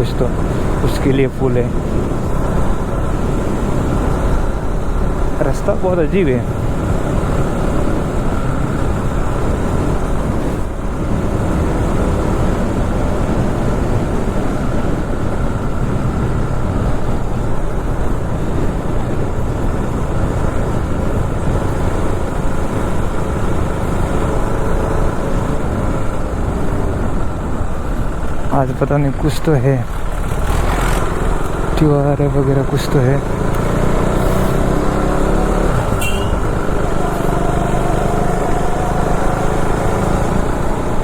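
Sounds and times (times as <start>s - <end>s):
wind rushing over microphone: 0.0s - 41.0s
motorcycle engine running: 29.8s - 41.0s.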